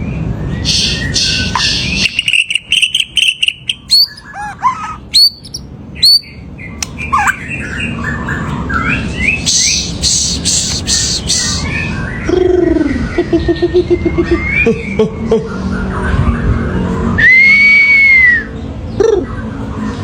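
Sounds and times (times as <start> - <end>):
songbird singing varied whistles: 0.6 - 7.5.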